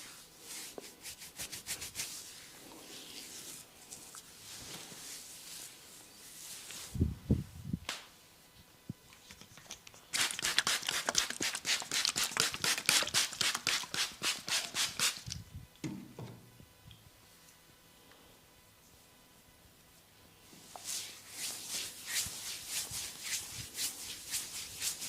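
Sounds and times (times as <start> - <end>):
fingers rubbing through hair: 0.0 - 7.0, 9.2 - 15.2, 20.6 - 25.0.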